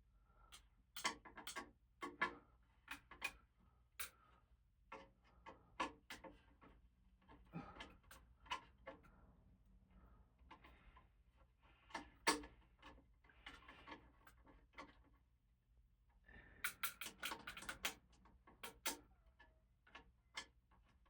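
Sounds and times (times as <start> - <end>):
clicks and knocks of fan parts: 0.5 - 3.4, 4.9 - 9.1, 11.8 - 15.2, 16.6 - 21.0.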